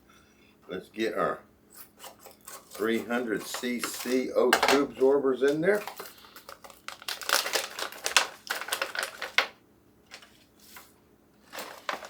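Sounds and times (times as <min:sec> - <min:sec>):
crinkling plastic pouches: 0:02.8 - 0:12.0
packets dropping with clicks: 0:03.6 - 0:10.3.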